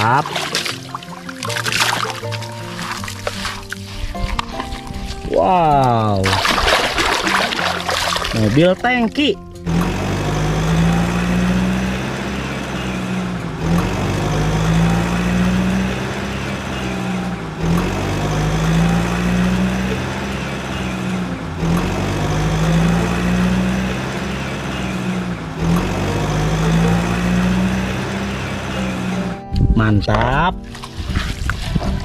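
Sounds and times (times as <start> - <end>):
vehicle engine running: 7.4 - 29.5.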